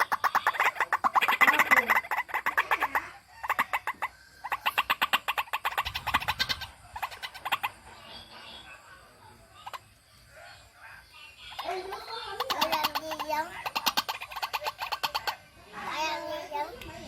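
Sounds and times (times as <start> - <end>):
waterhen harsh repeated calls: 0.0 - 7.9, 11.5 - 15.6.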